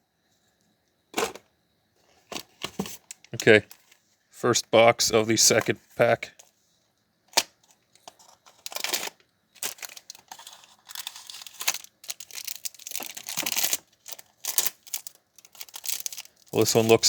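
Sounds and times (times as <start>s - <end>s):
packaging crinkling and tearing: 8.6s - 17.0s.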